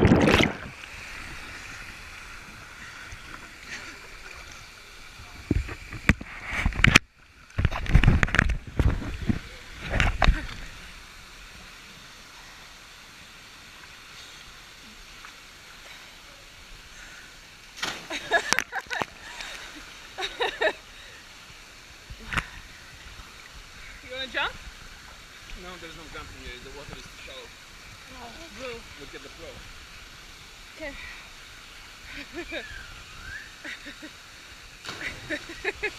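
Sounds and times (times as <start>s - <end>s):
loud splashing: 17.8s - 18.6s, 34.8s - 35.9s.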